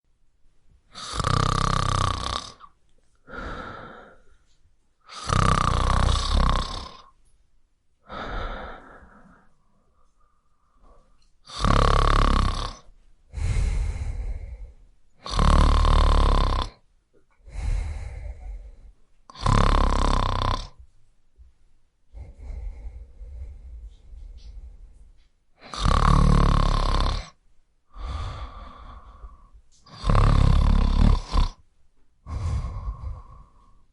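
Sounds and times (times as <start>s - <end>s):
person snoring: 0.9s - 2.7s, 5.1s - 7.1s, 8.1s - 9.5s, 10.8s - 16.8s, 17.4s - 20.8s, 22.1s - 25.0s, 25.6s - 31.6s, 32.2s - 33.9s
soft breath sounds: 3.0s - 7.2s, 8.0s - 16.4s, 17.4s - 20.1s, 22.1s - 31.6s, 32.2s - 33.9s.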